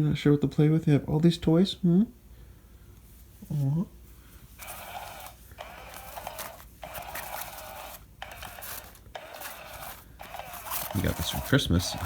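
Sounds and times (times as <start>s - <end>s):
motorized cat toy running: 4.6s - 12.0s.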